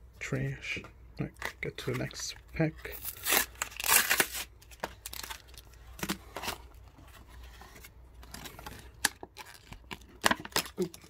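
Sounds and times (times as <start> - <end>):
wrapper crinkling: 2.9 - 6.2
packaging tearing: 2.9 - 6.6, 8.3 - 11.0.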